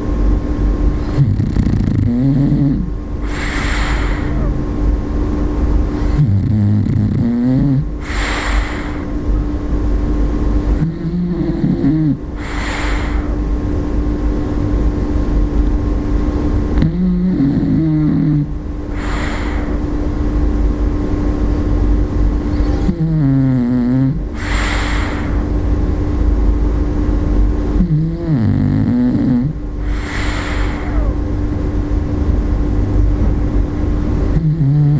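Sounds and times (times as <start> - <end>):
steady low hum: 0.0 - 34.9
dog snoring: 1.0 - 4.6, 6.0 - 9.4, 10.6 - 13.5, 16.7 - 19.8, 22.5 - 25.6, 27.8 - 31.2, 34.3 - 34.9.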